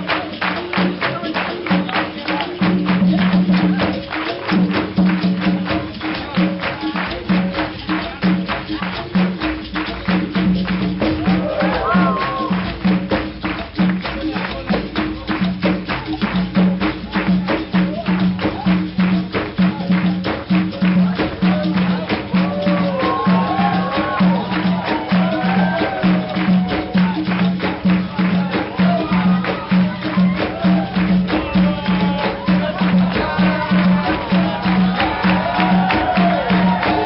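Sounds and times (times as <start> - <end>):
tambourine and rattle percussion: 0.0 - 37.0
voices singing: 11.2 - 12.7, 21.0 - 37.0.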